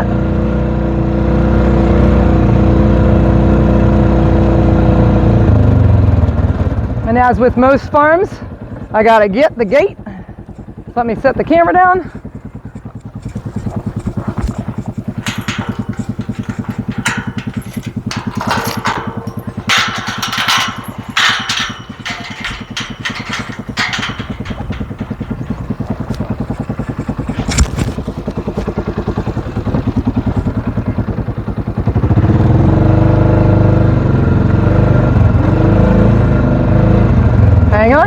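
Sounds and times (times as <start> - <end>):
small engine idling: 1.0 - 38.0
clattering: 12.6 - 28.8.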